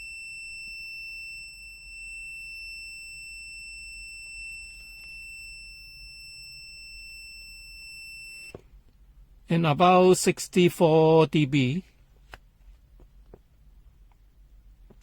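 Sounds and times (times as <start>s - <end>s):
multimeter continuity beep: 0.0s - 8.6s.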